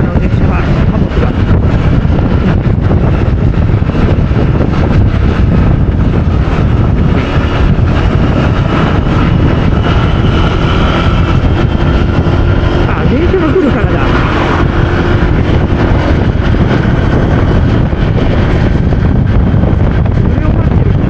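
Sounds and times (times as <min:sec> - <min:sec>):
motorbike engine drone: 0:00.0 - 0:21.0
wind rush on microphone: 0:00.0 - 0:21.0.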